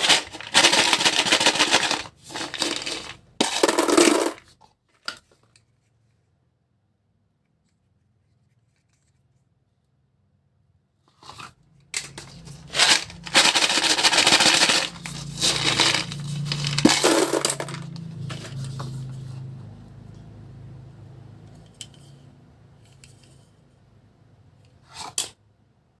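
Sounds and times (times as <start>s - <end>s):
plastic packaging crackling and tearing: 12.6s - 16.9s.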